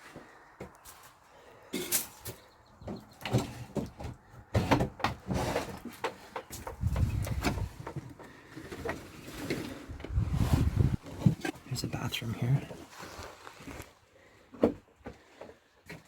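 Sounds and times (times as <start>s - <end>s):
knocks clatters and scrapes: 1.7s - 11.8s.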